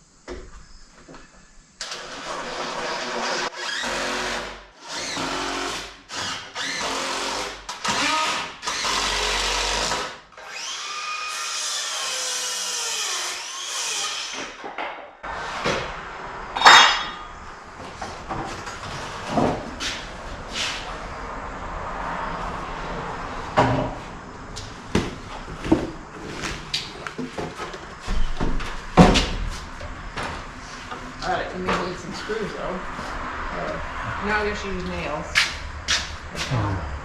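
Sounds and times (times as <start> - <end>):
power drill driving fasteners: 1.8 - 14.6.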